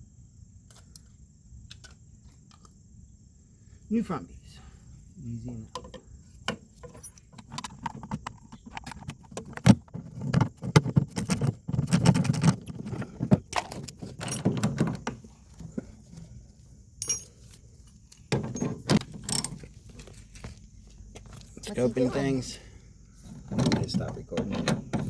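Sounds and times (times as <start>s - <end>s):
hard parts clicking and rattling: 5.7s - 16.2s, 18.1s - 20.2s, 23.2s - 25.0s.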